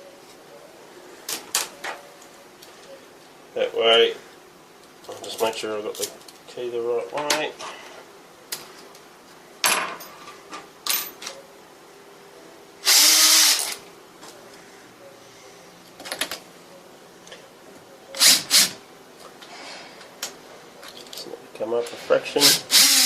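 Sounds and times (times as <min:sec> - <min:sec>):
power drill drilling: 0:12.8 - 0:13.8, 0:18.2 - 0:18.8, 0:22.4 - 0:23.0.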